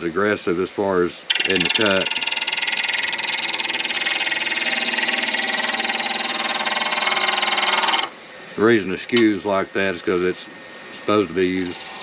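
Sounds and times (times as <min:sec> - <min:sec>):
lathe tool cutting acrylic: 0:01.2 - 0:08.1, 0:11.4 - 0:12.0.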